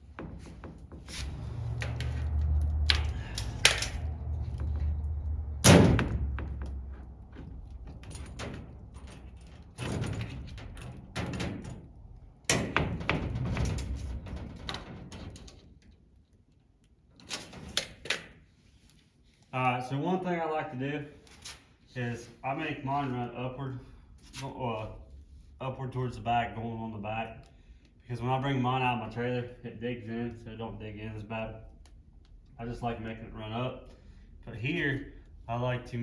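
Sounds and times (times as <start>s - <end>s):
low rumble: 1.1s - 11.2s.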